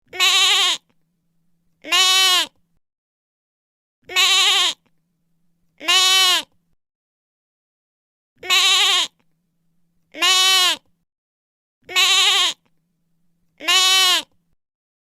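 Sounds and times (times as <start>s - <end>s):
lamb bleating: 0.1s - 0.9s, 1.8s - 2.6s, 4.1s - 4.9s, 5.8s - 6.6s, 8.4s - 9.2s, 10.1s - 10.9s, 11.8s - 12.7s, 13.6s - 14.4s.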